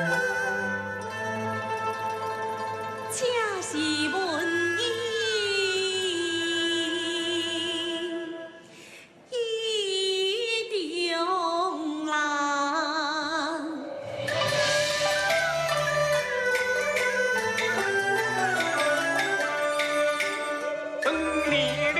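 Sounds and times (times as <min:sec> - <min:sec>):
person singing opera with vibrato: 0:21.0 - 0:21.9.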